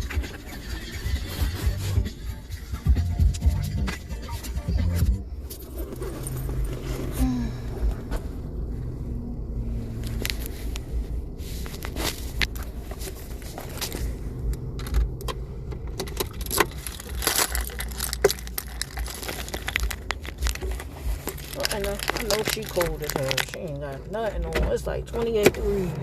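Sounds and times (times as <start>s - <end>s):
steady low rumble: 0.0s - 26.0s
keys jangling: 16.0s - 23.4s.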